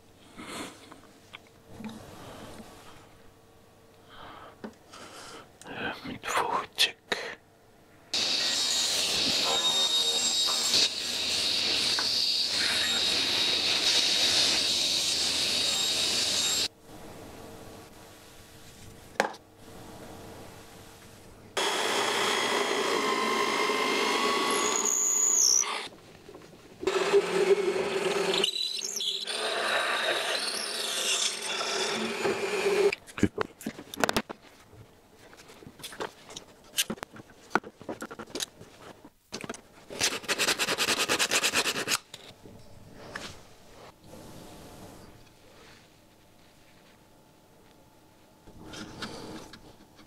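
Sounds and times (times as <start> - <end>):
power tools cutting wood: 8.2 - 16.7, 21.6 - 25.9, 26.8 - 32.9.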